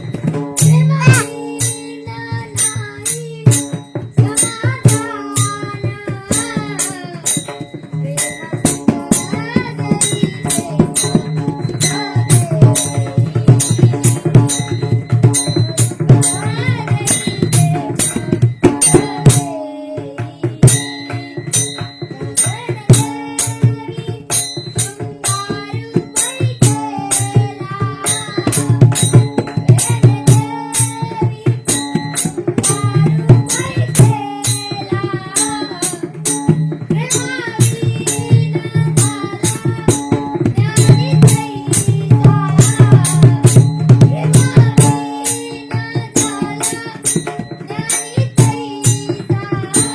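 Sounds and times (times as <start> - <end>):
hand drum: 0.0 - 49.9
person singing: 0.6 - 2.7.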